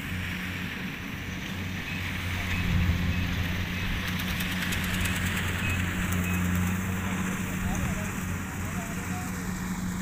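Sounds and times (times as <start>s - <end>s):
combine harvester engine humming: 0.0s - 10.0s.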